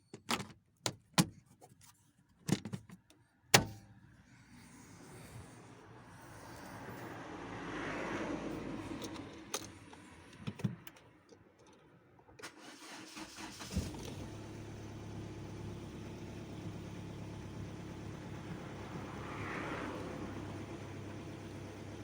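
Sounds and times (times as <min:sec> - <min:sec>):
car engine starting and idling: 0:11.7 - 0:22.0.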